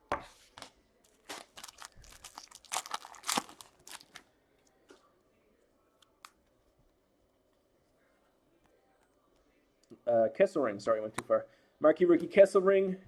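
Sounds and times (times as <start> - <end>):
foil wrapper tearing and crinkling: 1.2 - 4.2.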